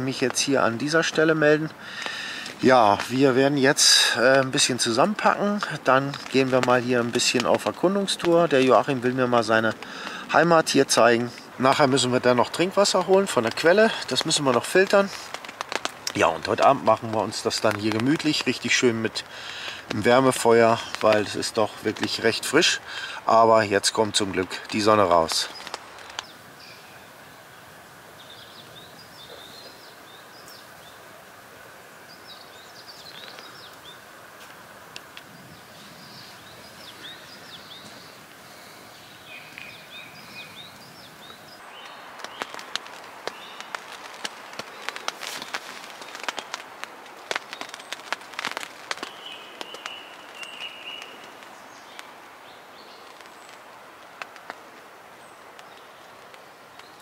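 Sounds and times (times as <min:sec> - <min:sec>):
sharp crackles and snaps: 0:00.0 - 0:57.0
small birds chirping: 0:00.0 - 0:57.0
steady outdoor hiss: 0:00.0 - 0:57.0.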